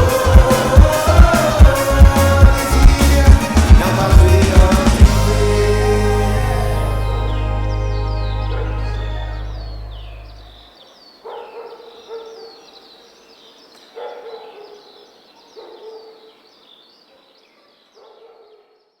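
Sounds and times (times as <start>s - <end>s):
lower pitched animal call: 5.4s - 10.8s.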